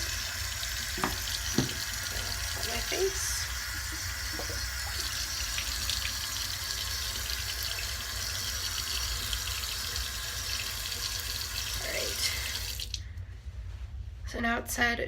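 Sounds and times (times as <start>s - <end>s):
tap running into sink: 0.0s - 3.1s.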